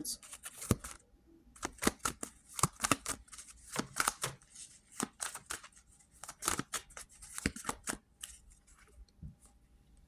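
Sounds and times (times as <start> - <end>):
cards being shuffled: 0.2 - 1.0, 1.6 - 8.4.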